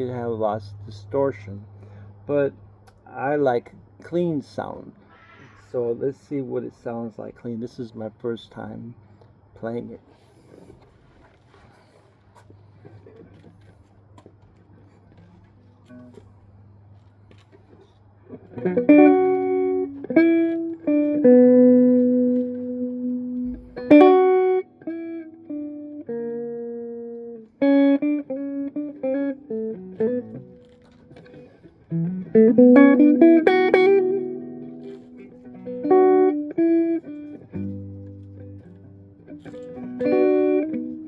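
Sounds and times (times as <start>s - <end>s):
clean electric guitar: 0.0s - 3.8s, 14.9s - 41.0s.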